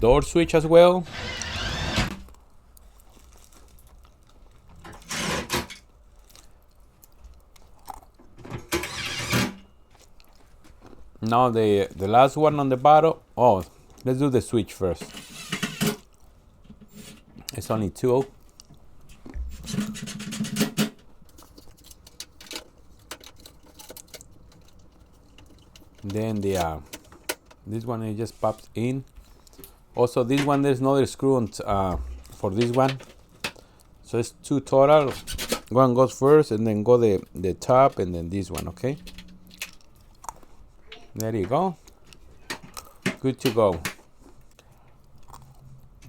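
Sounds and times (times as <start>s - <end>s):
scraping crunching handling noises: 0.0s - 34.0s.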